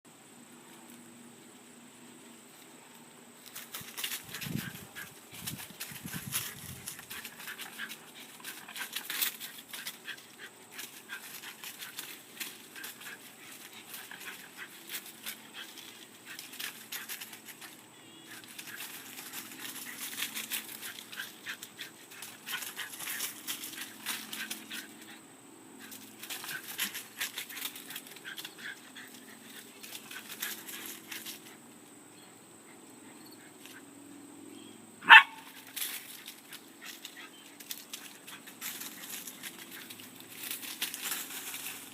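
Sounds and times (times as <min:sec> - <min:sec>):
dog scuffling and rustling: 0:03.4 - 0:25.1, 0:35.4 - 0:41.9
dog barking: 0:35.0 - 0:35.5.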